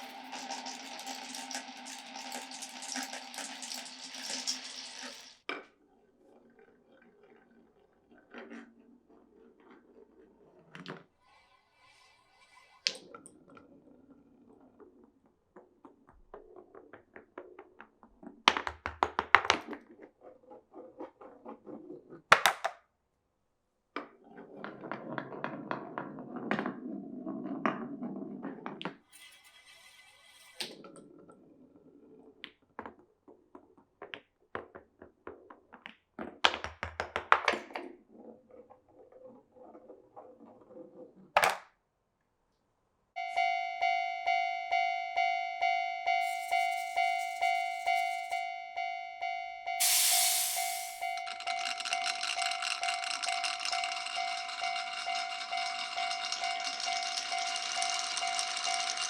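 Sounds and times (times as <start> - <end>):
marbles clattering down wooden run: 0.0 - 5.4, 46.2 - 48.4, 50.2 - 59.0
marbles rolling rumble: 0.0 - 5.4, 24.2 - 29.4, 46.2 - 48.4, 49.8 - 59.0.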